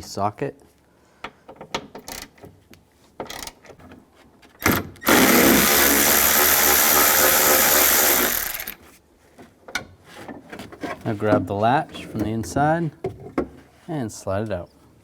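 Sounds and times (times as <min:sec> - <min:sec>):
cordless power driver spinning: 0:05.0 - 0:08.8.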